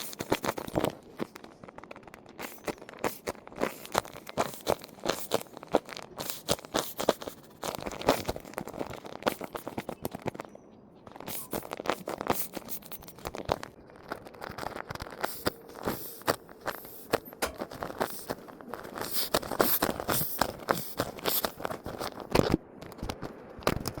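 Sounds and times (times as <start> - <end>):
squishy toys crunching and crackling: 0.0 - 24.0.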